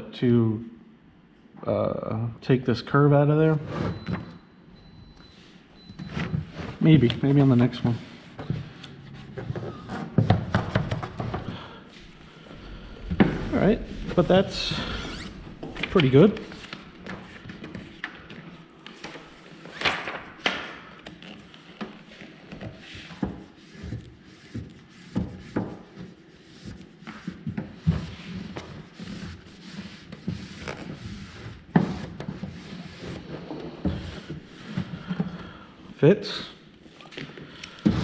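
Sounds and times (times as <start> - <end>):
rustling and rubbing: 6.0 - 19.7, 21.2 - 35.1.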